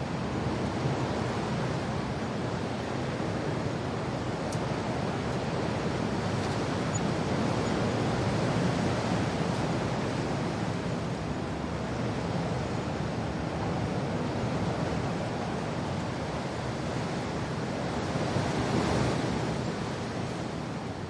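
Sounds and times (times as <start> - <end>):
wind: 0.0 - 21.0.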